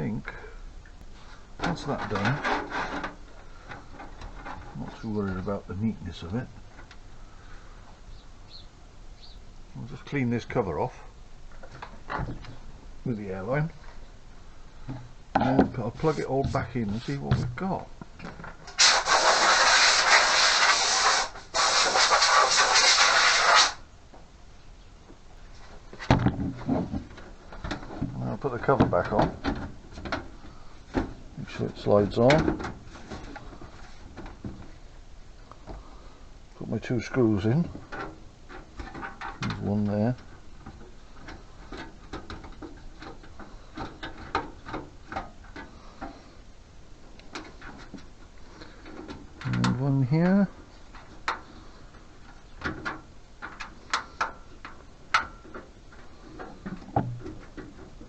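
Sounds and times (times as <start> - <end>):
compressed air hissing: 18.8 - 23.8.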